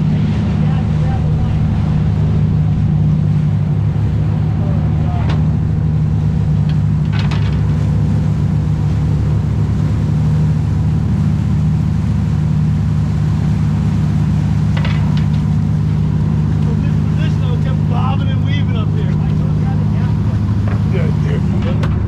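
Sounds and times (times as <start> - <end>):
boat engine droning: 0.0 - 22.0.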